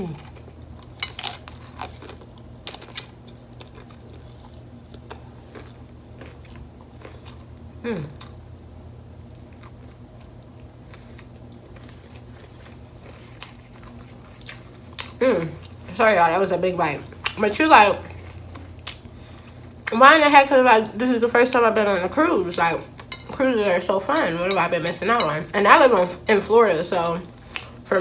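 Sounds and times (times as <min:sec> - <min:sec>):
crunching and chewing taco: 0:00.0 - 0:16.0, 0:16.9 - 0:19.9
hum-like vocal sound: 0:07.8 - 0:08.3.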